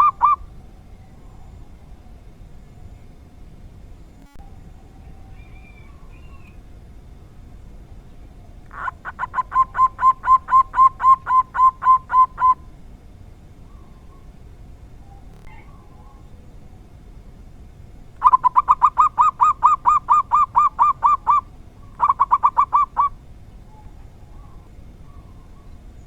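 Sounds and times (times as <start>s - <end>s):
dove cooing: 0.0s - 2.2s, 8.3s - 12.8s, 15.0s - 16.9s, 18.2s - 26.0s
small birds chirping: 0.0s - 26.0s.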